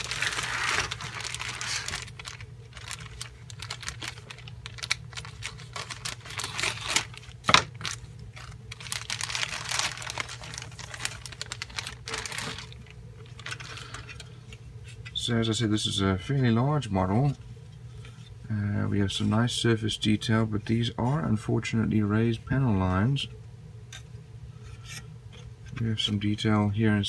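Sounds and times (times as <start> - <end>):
plastic parts clicking and rattling: 0.0 - 14.3
plastic wrapping crinkling: 0.0 - 15.0.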